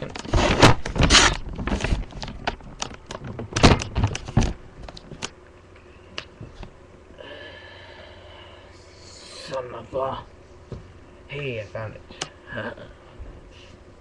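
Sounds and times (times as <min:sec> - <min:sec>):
rustling and clatter: 0:00.0 - 0:05.3.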